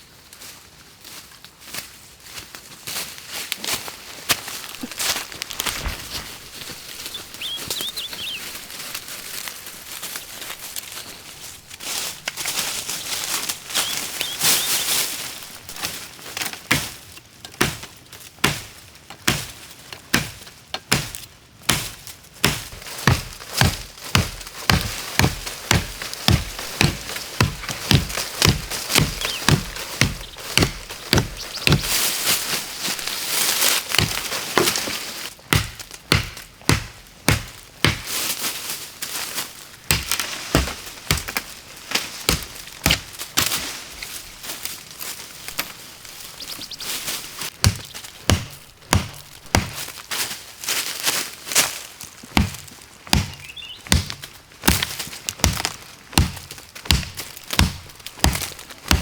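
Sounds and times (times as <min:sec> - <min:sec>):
wood being chopped by hand: 0:20.1 - 0:33.1, 0:33.9 - 0:38.2, 0:39.8 - 0:43.7, 0:45.5 - 0:49.9, 0:52.3 - 0:59.0.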